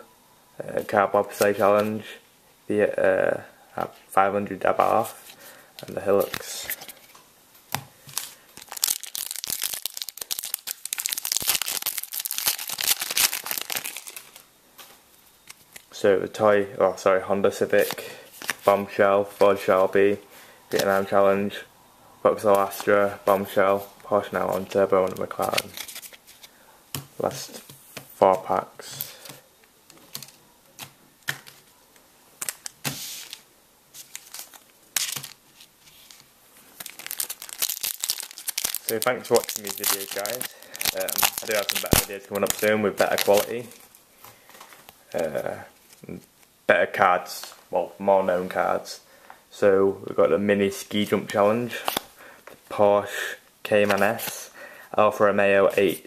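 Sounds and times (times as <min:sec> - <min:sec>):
wrapper tearing and crinkling: 0:08.1 - 0:14.5, 0:34.0 - 0:36.2, 0:36.8 - 0:44.0
cards clicking and slapping: 0:34.1 - 0:35.4.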